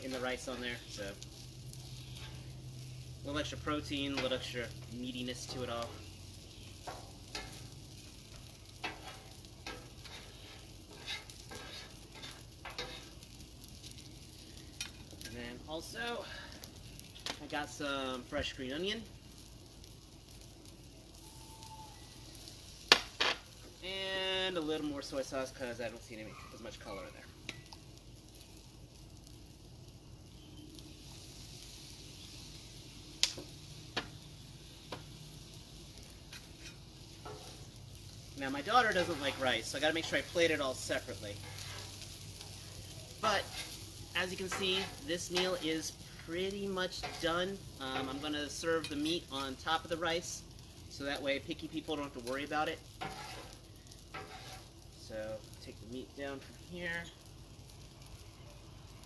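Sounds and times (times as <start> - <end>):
rice sizzling on a griddle: 0.0 - 59.0
spatula clacking on griddle: 3.4 - 6.0, 6.6 - 14.1, 22.8 - 23.6, 36.2 - 37.7, 38.6 - 40.5, 41.4 - 49.1, 52.9 - 54.8
spatula scraping cooktop: 8.8 - 13.2, 38.7 - 40.2, 46.9 - 49.0, 53.0 - 54.7.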